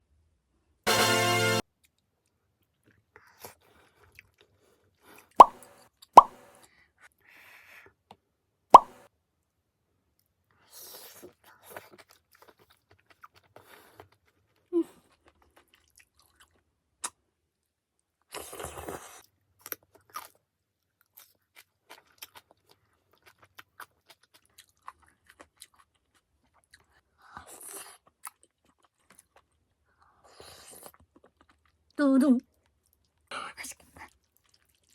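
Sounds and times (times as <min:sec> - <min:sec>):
chewing: 0:02.6 - 0:06.2, 0:10.9 - 0:17.2, 0:18.2 - 0:34.9.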